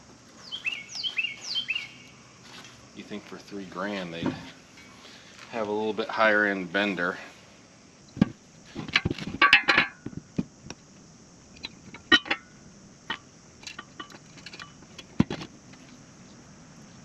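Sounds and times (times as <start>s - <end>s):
metal parts clinking and rattling: 13.6s - 15.1s.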